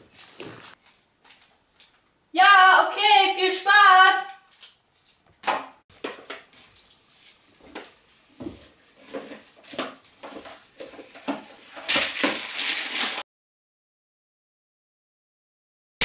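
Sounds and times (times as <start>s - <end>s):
crinkling handling noise: 4.4s - 13.2s.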